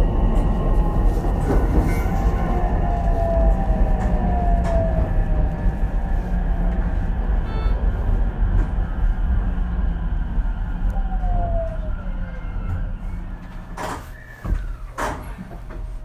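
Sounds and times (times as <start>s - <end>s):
train running rumble: 0.0s - 16.0s.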